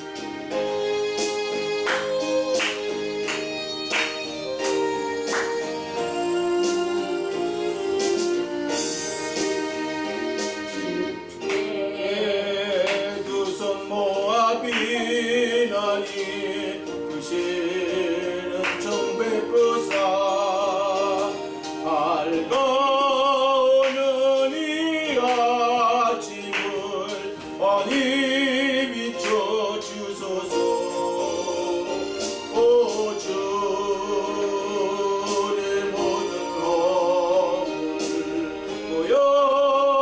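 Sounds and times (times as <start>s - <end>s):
man singing with vibrato: 0.0s - 9.4s, 10.6s - 40.0s
keyboard accompaniment: 0.0s - 40.0s.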